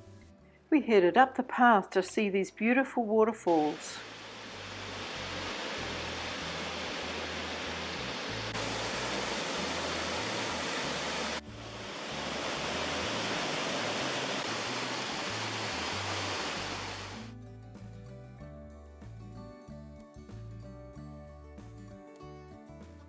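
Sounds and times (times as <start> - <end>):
waterfall rushing: 3.5 - 17.3.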